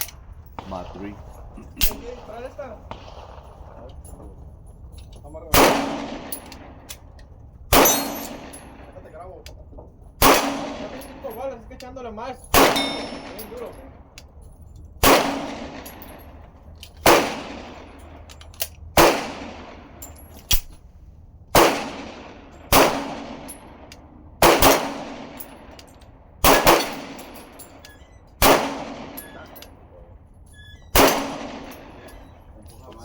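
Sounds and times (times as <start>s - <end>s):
pistol shots: 0.6s - 4.3s, 5.5s - 7.1s, 7.7s - 9.0s, 10.2s - 11.4s, 12.5s - 14.1s, 15.0s - 20.8s, 21.5s - 25.8s, 26.4s - 29.8s, 30.9s - 32.5s
sharp metal clanks: 4.0s - 8.9s, 12.5s - 20.8s, 24.6s - 29.8s, 30.4s - 33.0s.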